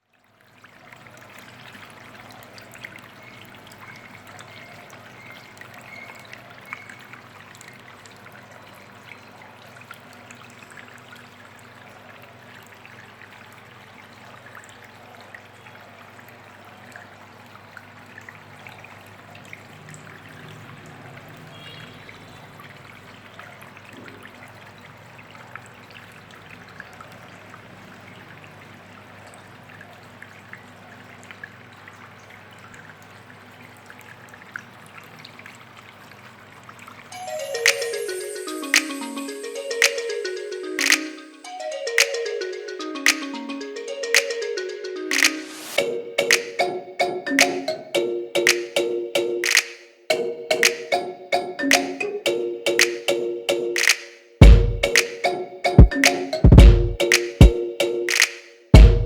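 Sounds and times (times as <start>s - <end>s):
water trickling over rocks: 0.0s - 37.1s
water drips and splashes: 0.0s - 37.9s.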